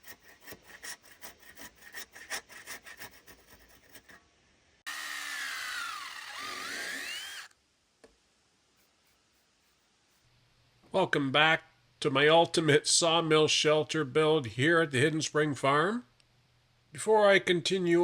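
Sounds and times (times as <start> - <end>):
hand saw strokes on wood: 0.0 - 4.2
power saw cutting: 4.9 - 7.5.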